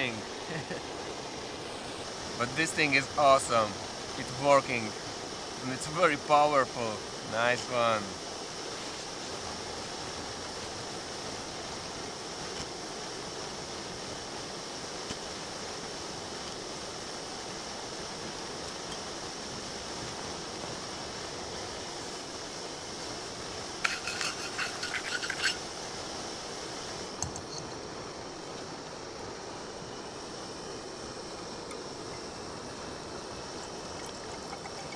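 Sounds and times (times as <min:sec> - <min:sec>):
gas stove hissing: 0:00.0 - 0:34.9
light clicks and clinks: 0:23.8 - 0:25.6, 0:34.0 - 0:34.9.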